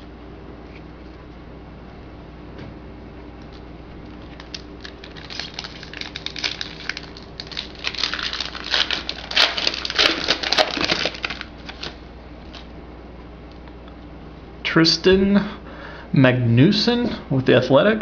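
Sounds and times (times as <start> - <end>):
foil wrapper crinkling and tearing: 4.1 - 12.7.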